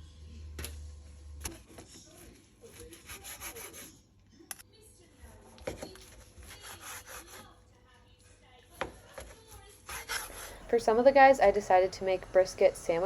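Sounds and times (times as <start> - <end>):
knife sawing on wooden board: 2.7 - 3.9, 6.4 - 7.5, 9.8 - 10.7.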